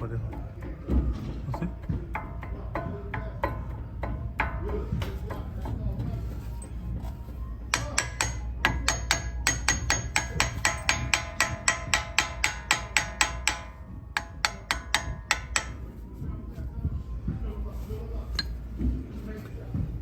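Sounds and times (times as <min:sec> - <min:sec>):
hammer striking metal: 0:07.7 - 0:16.0.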